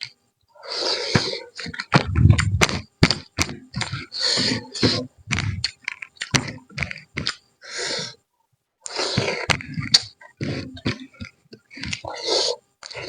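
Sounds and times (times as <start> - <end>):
person chewing and smacking: 1.0 - 7.4, 8.9 - 12.2.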